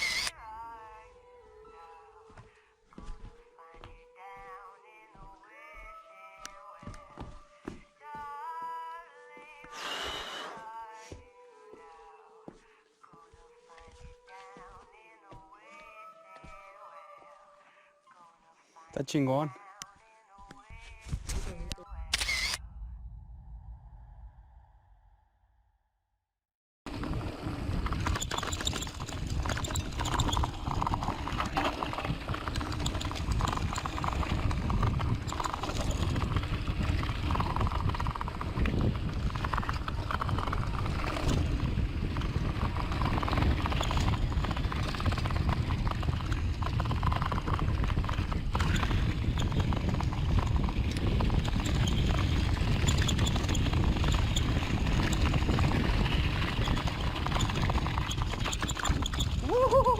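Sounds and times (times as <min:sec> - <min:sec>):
mountain bike rattling over bumps: 0:26.9 - 0:59.9.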